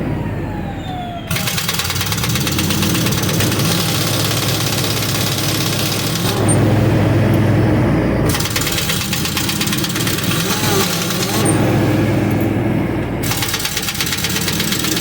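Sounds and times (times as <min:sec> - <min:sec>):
diesel engine idling: 0:00.0 - 0:15.0
air impact wrench hammering: 0:01.3 - 0:06.6, 0:08.3 - 0:12.5, 0:13.2 - 0:15.0.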